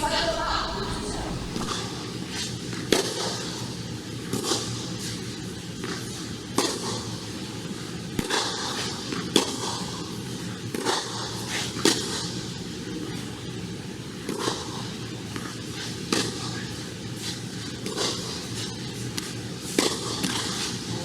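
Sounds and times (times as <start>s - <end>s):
steady court noise: 0.0s - 1.7s.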